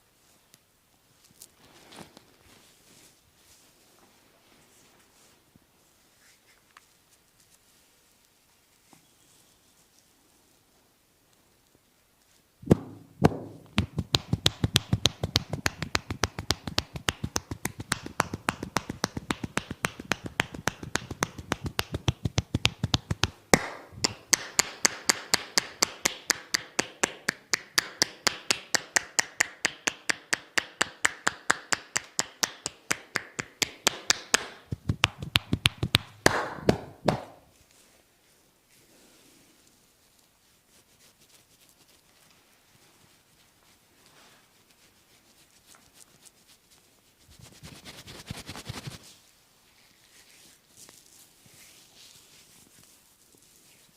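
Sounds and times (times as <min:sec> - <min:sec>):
hands slapping body in massage: 0:12.6 - 0:37.5, 0:47.4 - 0:49.1.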